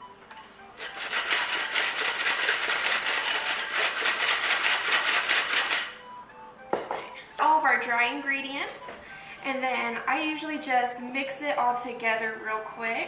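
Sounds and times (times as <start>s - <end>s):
flour sifter blades scraping: 0.8s - 6.0s.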